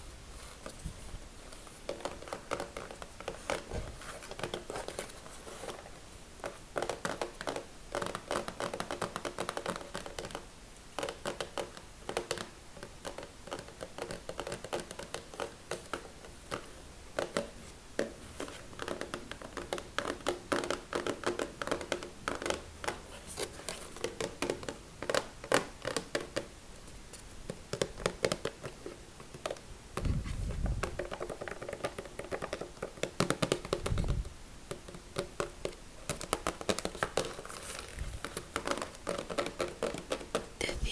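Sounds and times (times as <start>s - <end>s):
fingers tapping and scratching: 1.9s - 5.3s, 30.6s - 40.9s.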